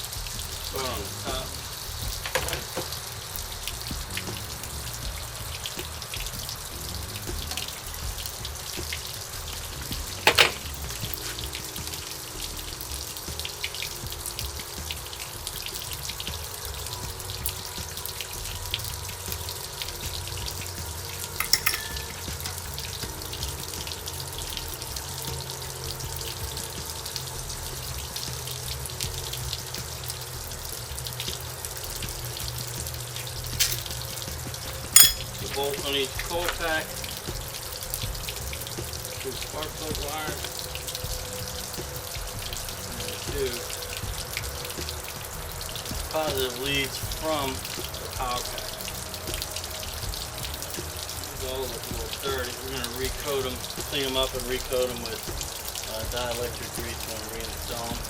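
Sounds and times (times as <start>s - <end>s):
steady hiss: 0.0s - 58.0s
socket and ratchet clinking: 10.3s - 10.6s, 21.4s - 22.6s, 33.6s - 33.9s, 35.0s - 35.3s.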